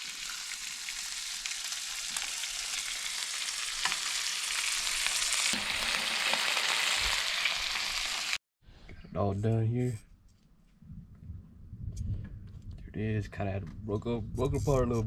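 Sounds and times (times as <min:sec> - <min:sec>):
fish sizzling in hot oil: 0:00.0 - 0:08.4.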